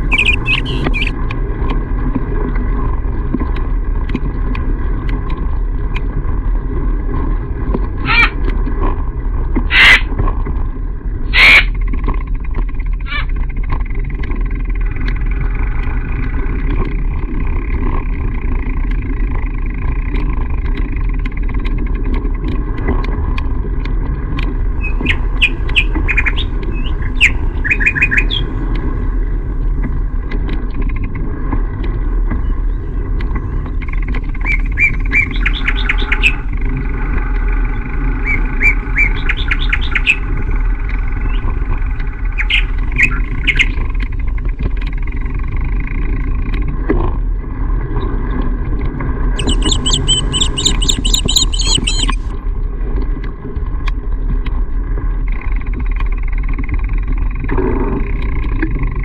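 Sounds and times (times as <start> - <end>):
birds chirping: 0.0 - 1.1, 24.7 - 28.6, 32.3 - 36.8, 37.5 - 41.6, 42.2 - 43.8, 49.4 - 52.3
steady low rumble: 0.0 - 59.0.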